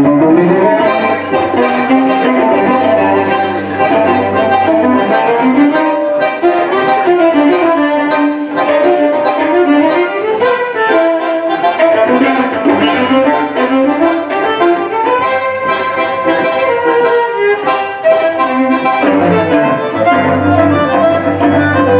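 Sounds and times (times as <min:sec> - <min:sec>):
bandoneon playing tango: 0:00.0 - 0:21.9
cello playing: 0:00.0 - 0:21.9.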